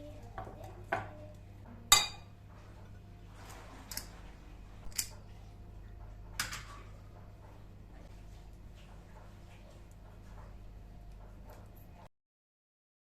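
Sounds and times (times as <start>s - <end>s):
steady low hum: 0.0s - 12.1s
kitchenware clinking: 1.9s - 3.0s, 3.7s - 4.2s, 4.8s - 5.4s, 6.0s - 7.0s.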